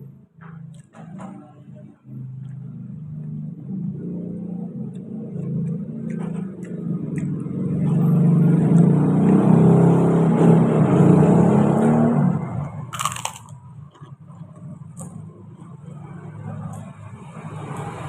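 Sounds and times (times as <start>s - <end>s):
motor vehicle passing: 1.7s - 18.0s
sharp crunch of biting: 4.9s - 7.6s, 12.9s - 15.3s.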